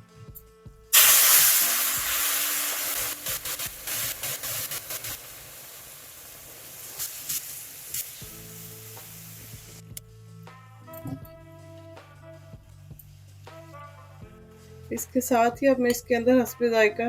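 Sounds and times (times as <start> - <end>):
water hissing in hot pan: 0.9 - 9.8
crackles: 1.0 - 9.8.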